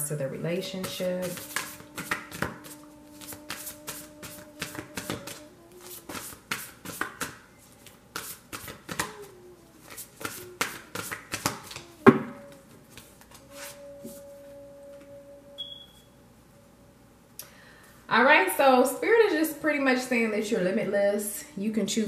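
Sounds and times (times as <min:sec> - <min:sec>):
soft background music: 0:00.0 - 0:06.0, 0:11.8 - 0:17.1
cards being shuffled: 0:01.2 - 0:12.0
deck slap: 0:10.2 - 0:11.9.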